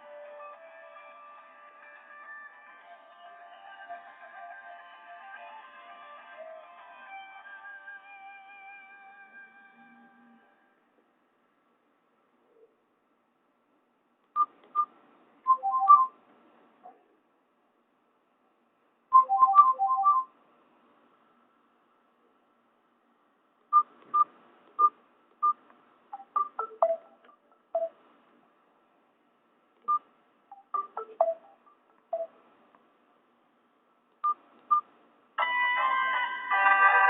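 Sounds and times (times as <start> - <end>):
phone ringtone electronic notes: 26.2 - 27.2, 30.6 - 32.3.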